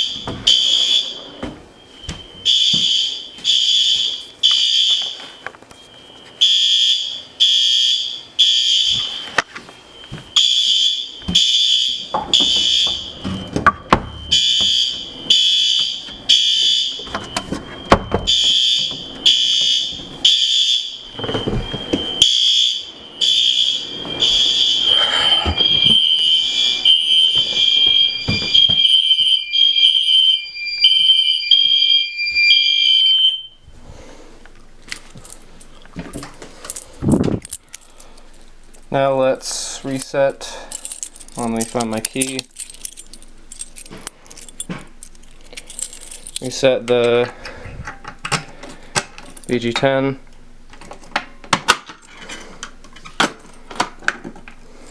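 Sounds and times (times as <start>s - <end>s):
fire alarm horns blasting: 0.0s - 33.7s, 38.8s - 47.3s
fast pulsing alarm tone: 14.1s - 33.6s.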